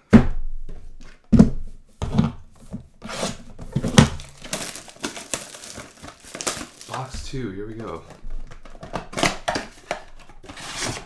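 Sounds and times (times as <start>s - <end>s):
cardboard boxes knocking on table: 0.1s - 11.0s
wrappers and cards crinkling: 3.1s - 11.0s.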